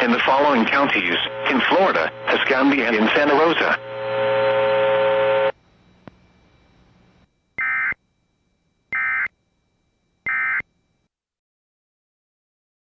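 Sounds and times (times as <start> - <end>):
buzzing two-tone data bursts: 7.2 - 8.2, 8.8 - 9.4, 10.2 - 11.0.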